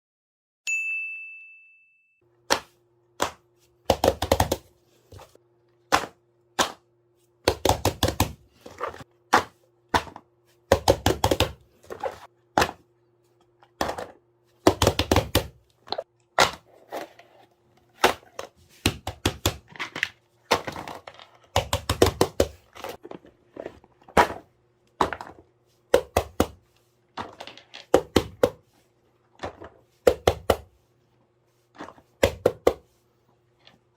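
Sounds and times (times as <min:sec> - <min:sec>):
single ding: 0:00.6 - 0:02.2.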